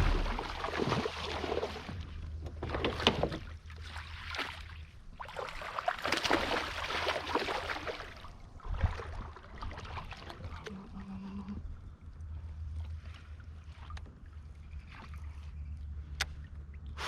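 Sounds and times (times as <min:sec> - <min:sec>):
low rumble: 0:00.0 - 0:02.6
water slaps: 0:00.0 - 0:03.4, 0:04.0 - 0:08.2
water splashing against kayak: 0:00.0 - 0:10.8.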